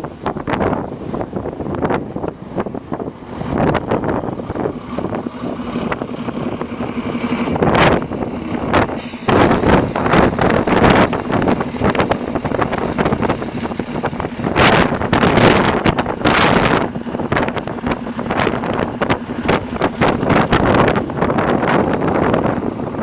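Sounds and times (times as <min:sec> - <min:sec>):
road traffic hum: 0:00.0 - 0:23.0
wind buffeting microphone: 0:00.0 - 0:23.0
short sharp hiss: 0:09.0 - 0:10.3.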